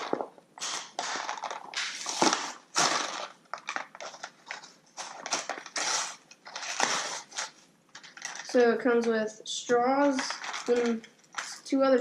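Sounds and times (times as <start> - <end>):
plastic packaging crinkling: 0.0 - 9.1, 10.0 - 11.7.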